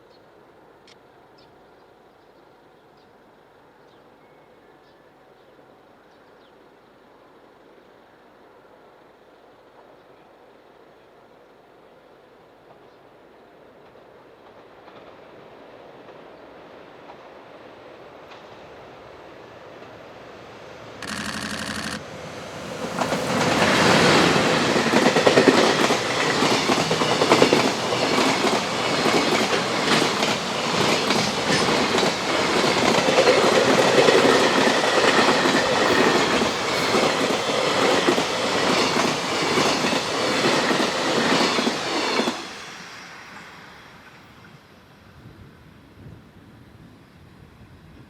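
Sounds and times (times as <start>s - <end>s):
train wheels clattering on rails: 13.8s - 17.5s, 22.8s - 42.6s.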